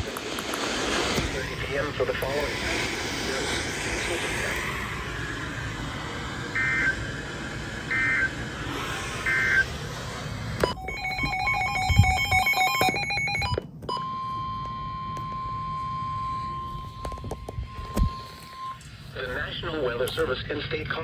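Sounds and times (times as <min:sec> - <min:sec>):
warbling data bursts: 0:01.2 - 0:13.4
steady warning alarm tone: 0:01.5 - 0:19.9
digital header tones: 0:07.9 - 0:08.4, 0:10.6 - 0:18.8.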